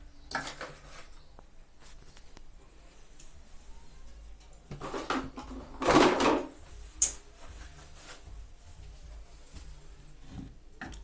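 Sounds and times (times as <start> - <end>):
knocks and rustles: 4.4 - 6.8.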